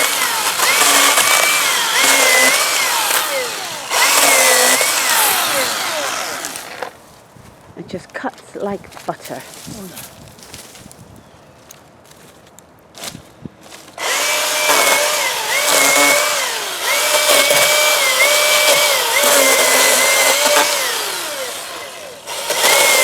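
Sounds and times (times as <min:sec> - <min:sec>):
electric chainsaw whining: 0:00.0 - 0:07.0, 0:14.0 - 0:23.0.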